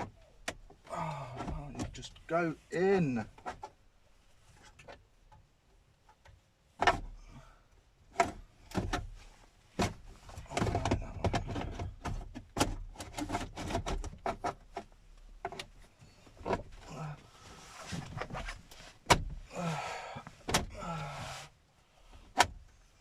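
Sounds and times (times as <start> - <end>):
car stereo knocking and scraping: 0.0 - 3.8, 6.2 - 7.2, 8.1 - 19.5.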